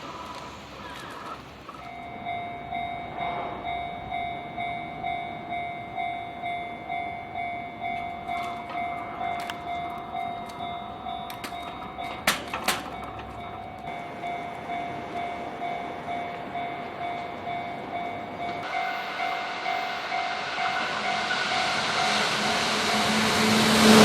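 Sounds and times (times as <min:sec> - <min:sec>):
level crossing warning bell: 0:00.0 - 0:24.0
sharp clacks: 0:11.3 - 0:13.9.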